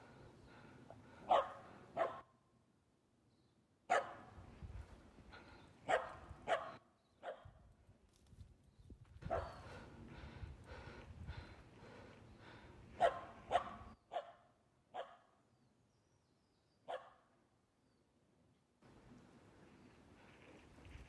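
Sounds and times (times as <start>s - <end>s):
dog barking: 1.2s - 2.3s, 3.9s - 4.3s, 5.9s - 7.6s, 9.3s - 9.6s, 13.0s - 15.4s, 16.9s - 17.3s.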